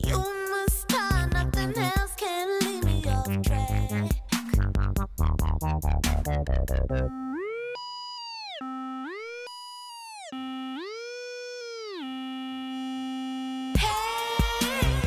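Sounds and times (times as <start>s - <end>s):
synthesizer tone bending: 4.5s - 13.8s.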